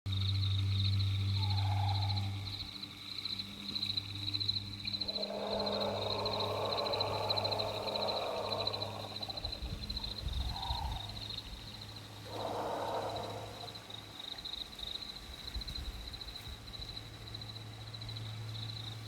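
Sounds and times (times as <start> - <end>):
low hum: 0.1 - 13.9
insects chirping: 0.1 - 19.0
dinosaur calls: 1.4 - 2.5, 5.0 - 11.3, 12.2 - 13.9
low rumble: 4.4 - 13.8.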